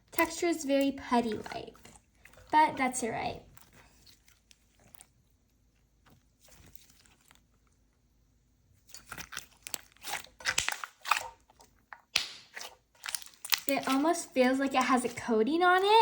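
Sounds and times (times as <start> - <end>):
slime squeezed by hand: 8.8 - 15.1
crackly clicks and pops: 11.8 - 13.9.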